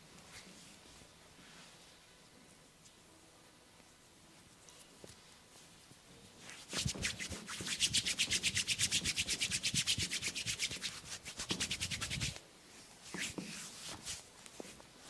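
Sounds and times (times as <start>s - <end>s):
scratching hair and scalp: 6.4s - 12.4s, 13.0s - 14.8s.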